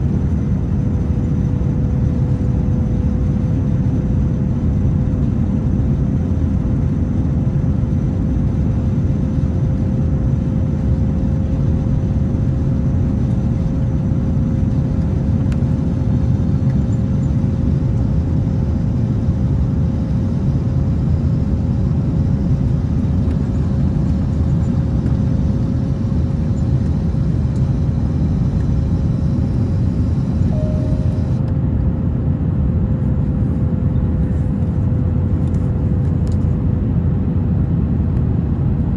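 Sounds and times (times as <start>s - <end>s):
airplane cabin roar: 0.0s - 38.9s
steady tone: 22.6s - 31.5s.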